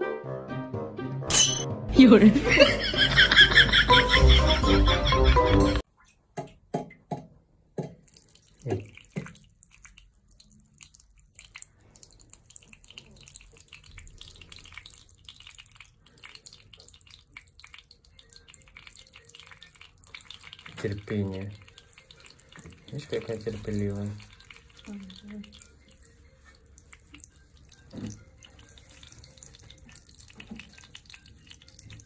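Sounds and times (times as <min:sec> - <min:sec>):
faint watery trickle: 0:07.8 - 0:32.0
water drops plinking: 0:12.6 - 0:32.0.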